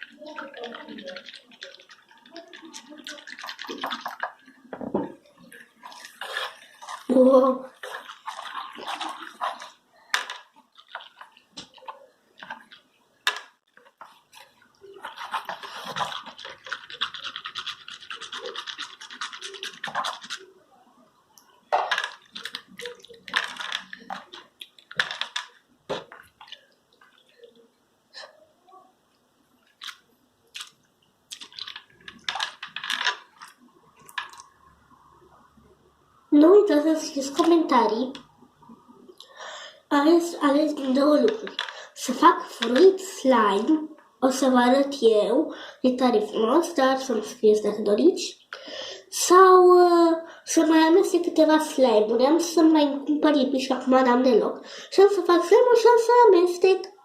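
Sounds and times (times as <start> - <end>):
slime squelching and crackling: 0.0 - 20.6, 21.4 - 27.6, 29.7 - 34.7.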